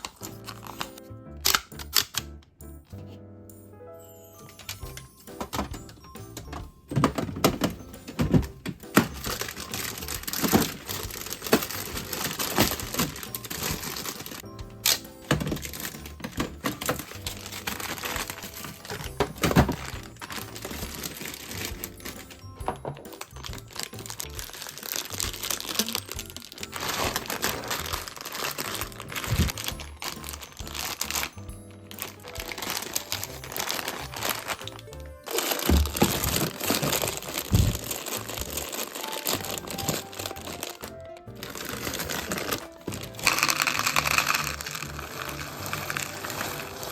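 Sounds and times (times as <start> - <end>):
plastic packaging crinkling: 0.0 - 2.1, 4.5 - 46.9
background music: 0.0 - 46.9
clicks and knocks of handling: 4.5 - 31.3.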